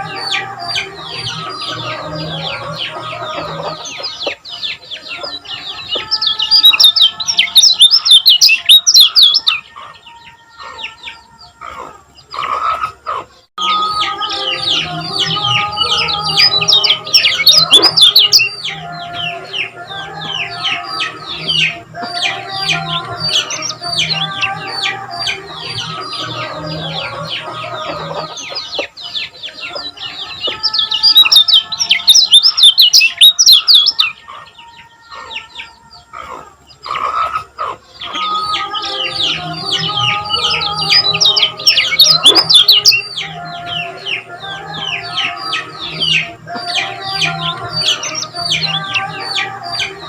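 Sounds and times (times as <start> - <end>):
bird chirping: 0.0 - 50.0.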